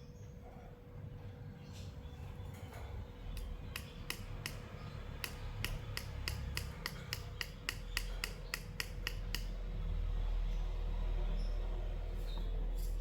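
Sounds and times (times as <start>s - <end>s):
sharp clicks or taps: 3.4s - 9.5s.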